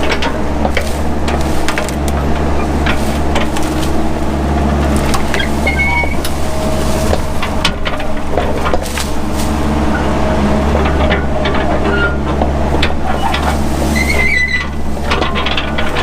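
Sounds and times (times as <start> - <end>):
brush and small trees snapping: 0.0 - 10.0
excavator engine running: 0.0 - 16.0
brief squeaks: 5.3 - 6.3, 13.1 - 14.7.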